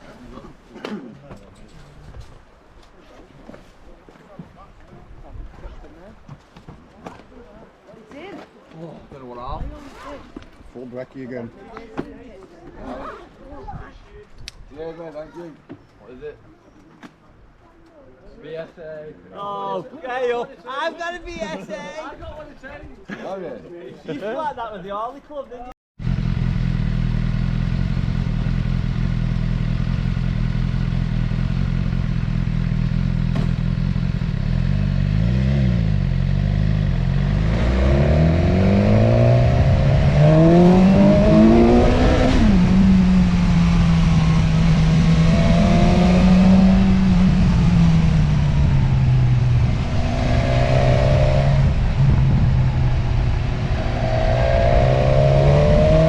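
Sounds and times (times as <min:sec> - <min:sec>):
motorcycle engine: 0:26.0 - 0:56.0.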